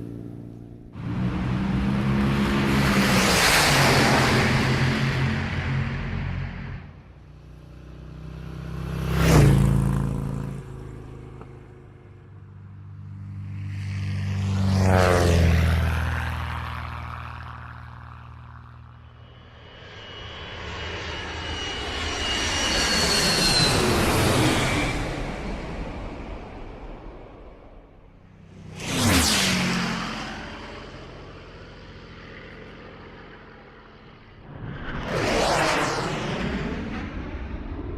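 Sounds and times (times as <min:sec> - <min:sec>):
vehicles passing by: 0:00.0 - 0:19.7, 0:24.1 - 0:37.5
high whine dropping in pitch: 0:34.2 - 0:37.9.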